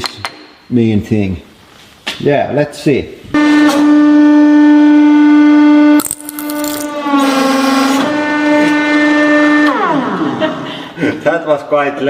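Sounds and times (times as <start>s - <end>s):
hydraulic press whining: 6.0s - 10.4s.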